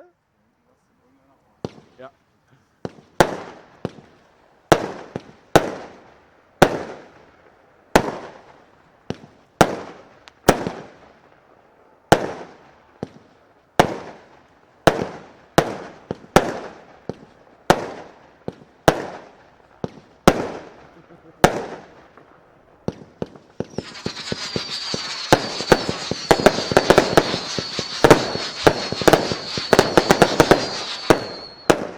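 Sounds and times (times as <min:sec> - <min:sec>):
weaker firework pops: 0:01.6 - 0:02.0, 0:02.8 - 0:05.8, 0:12.2 - 0:14.2, 0:21.4 - 0:31.9
fireworks bangs with echo: 0:01.6 - 0:02.1, 0:02.8 - 0:07.2, 0:07.9 - 0:11.4, 0:12.1 - 0:31.9.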